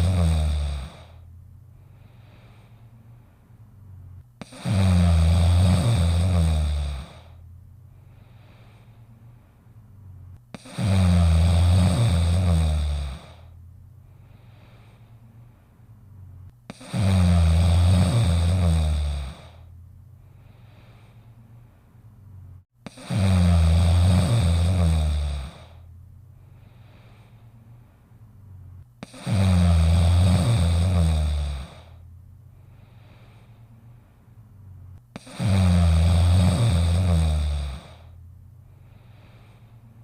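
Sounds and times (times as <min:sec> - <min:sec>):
loud snores: 0:00.0 - 0:01.2, 0:04.4 - 0:07.4, 0:10.6 - 0:13.5, 0:16.7 - 0:19.7, 0:22.9 - 0:25.8, 0:29.0 - 0:32.0, 0:35.1 - 0:38.1
faint breaths: 0:00.0 - 0:40.0.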